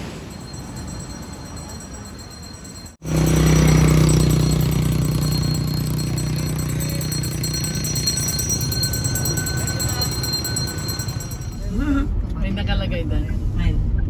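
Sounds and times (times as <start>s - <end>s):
loud steady engine: 3.0s - 12.3s.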